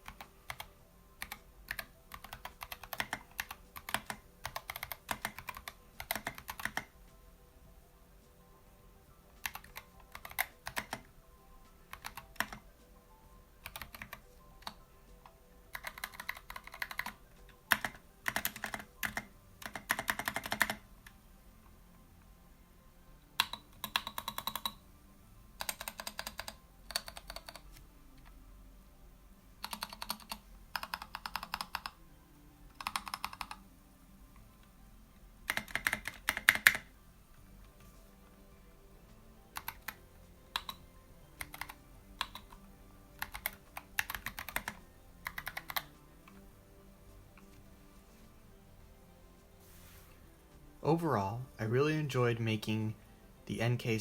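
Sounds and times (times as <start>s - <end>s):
mechanical keyboard typing: 0.0s - 7.0s, 9.4s - 11.1s, 11.9s - 12.7s, 13.6s - 14.8s, 15.7s - 20.8s, 23.4s - 24.8s, 25.6s - 28.3s, 29.6s - 32.0s, 32.7s - 33.6s, 35.4s - 36.9s, 39.5s - 46.4s.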